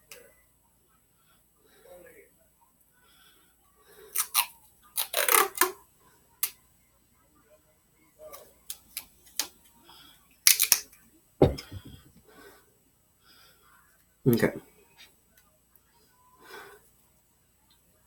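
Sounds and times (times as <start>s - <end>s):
heavy knock: 11.4s - 12.1s.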